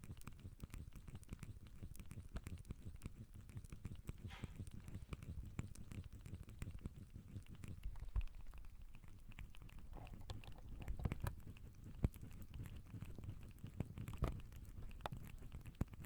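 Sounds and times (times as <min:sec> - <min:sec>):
faint clicks and crackles: 0:00.0 - 0:16.0.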